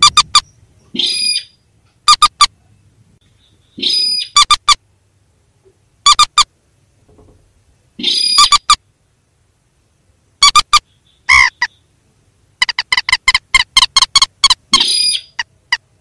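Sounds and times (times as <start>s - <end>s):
sharp bird calls: 0.0s - 4.8s, 6.0s - 6.5s, 8.0s - 8.8s, 10.4s - 12.0s, 12.6s - 16.0s.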